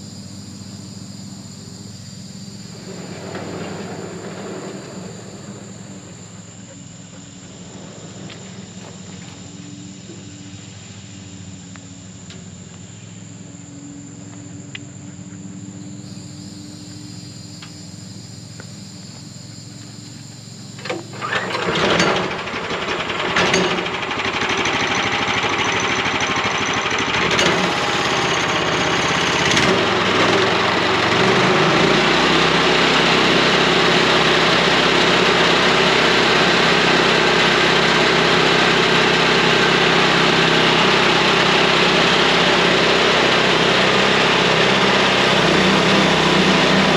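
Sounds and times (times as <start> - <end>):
small gas engine revving: 15.6 - 46.9.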